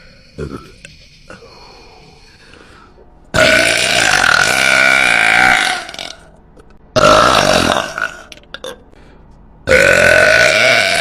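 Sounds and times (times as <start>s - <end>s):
woman burping loudly: 3.4s - 6.2s, 7.0s - 8.8s, 9.7s - 11.0s.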